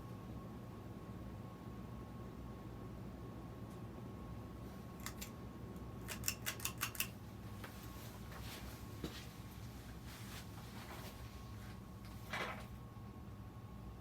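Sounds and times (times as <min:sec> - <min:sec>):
ceiling fan motor hum: 0:00.0 - 0:14.0
sharp clicks: 0:06.1 - 0:07.1.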